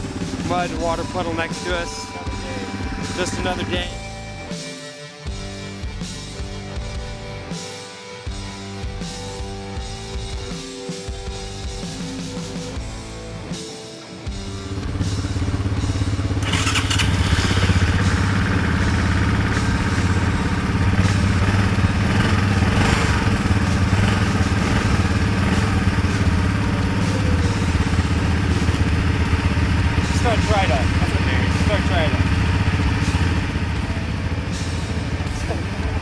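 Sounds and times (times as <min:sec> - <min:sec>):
atv engine running: 0:00.0 - 0:04.5, 0:14.3 - 0:36.0
background music: 0:00.0 - 0:36.0.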